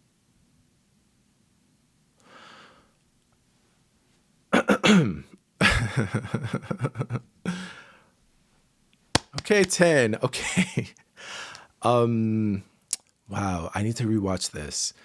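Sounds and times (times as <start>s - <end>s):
soft breath: 2.2s - 3.0s, 7.5s - 8.2s, 11.2s - 11.8s.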